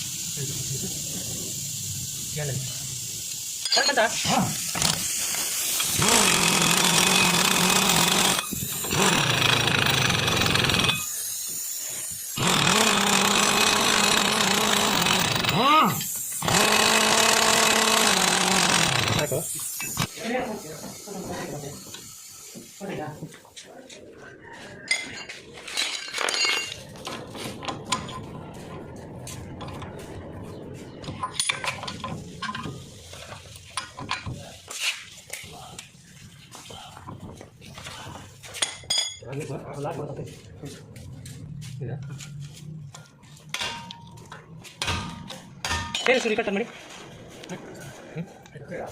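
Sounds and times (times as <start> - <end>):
metal tools clinking: 3.6 - 4.2, 24.9 - 26.9
power tool motor running: 4.7 - 11.3, 12.3 - 20.1.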